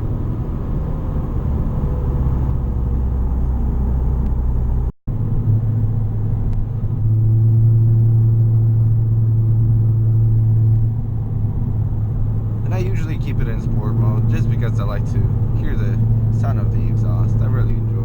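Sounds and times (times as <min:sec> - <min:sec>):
car exhaust drone: 0:00.0 - 0:18.0.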